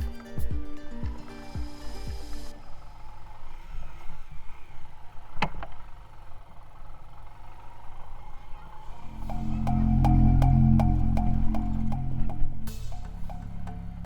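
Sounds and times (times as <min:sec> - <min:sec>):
motorcycle engine rumbling: 0:00.0 - 0:14.0.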